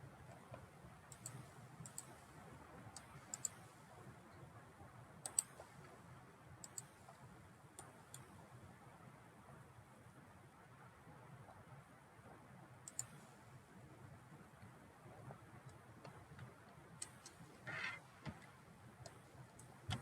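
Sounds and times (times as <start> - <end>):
computer mouse clicking: 1.1 - 2.2, 2.9 - 3.6, 5.2 - 5.6, 6.6 - 7.2, 12.8 - 13.2, 15.7 - 20.0.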